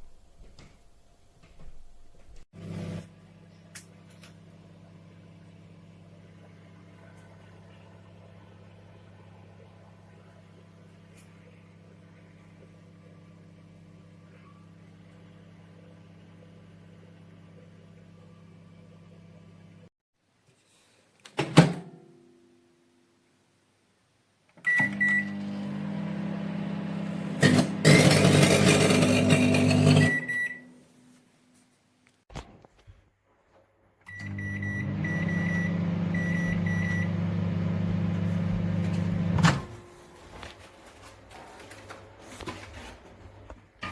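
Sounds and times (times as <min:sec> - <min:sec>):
microwave oven humming: 0:02.6 - 0:19.9, 0:24.6 - 0:30.8, 0:34.1 - 0:41.1
microwave control beeps: 0:24.6 - 0:26.2, 0:29.7 - 0:30.8, 0:34.1 - 0:39.6.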